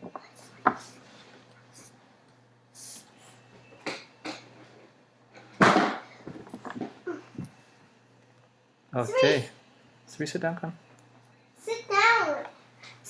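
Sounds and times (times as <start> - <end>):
loud thump: 5.6 - 6.1.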